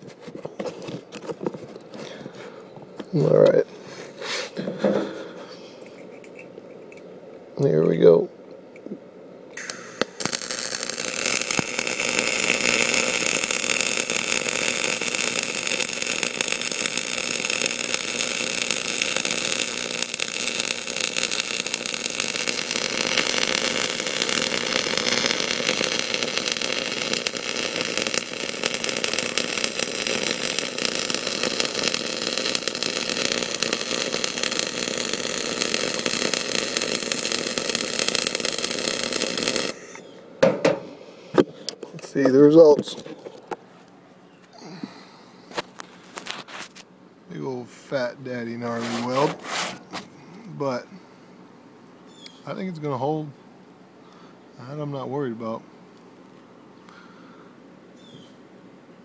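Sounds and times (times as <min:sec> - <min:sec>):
welding arc crackling hiss: 0:09.6 - 0:40.0.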